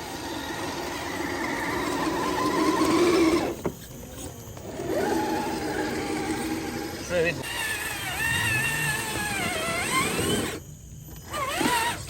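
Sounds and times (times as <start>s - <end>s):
electric motor whining: 0.0s - 12.0s.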